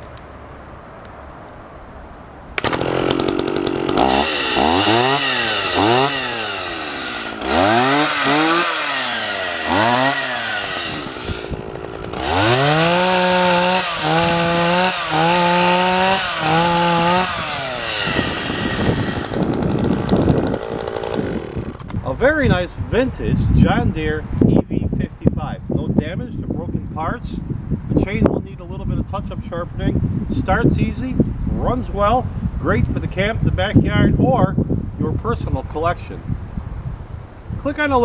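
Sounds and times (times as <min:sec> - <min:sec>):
two-stroke chainsaw revving: 0:02.6 - 0:22.0.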